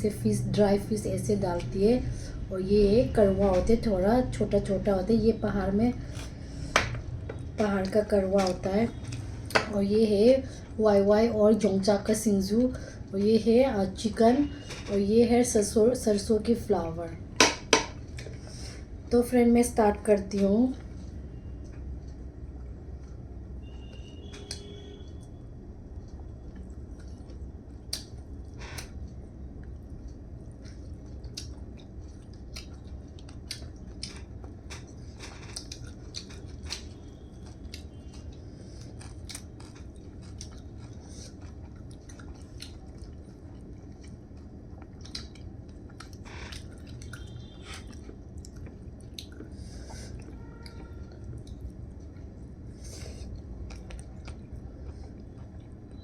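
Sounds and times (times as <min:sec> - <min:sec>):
steady low hum: 0:00.0 - 0:56.0
person chewing: 0:26.0 - 0:56.0.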